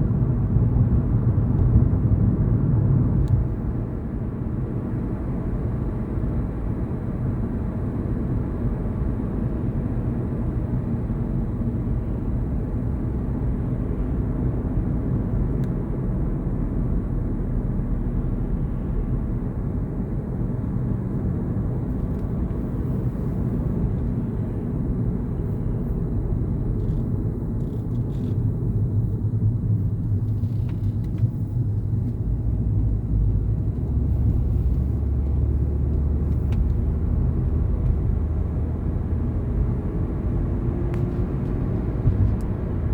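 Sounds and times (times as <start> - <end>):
car driving rumble: 0.0 - 42.9.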